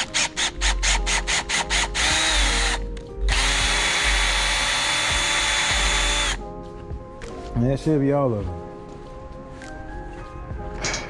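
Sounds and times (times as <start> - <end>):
power drill boring into metal: 0.0 - 6.4.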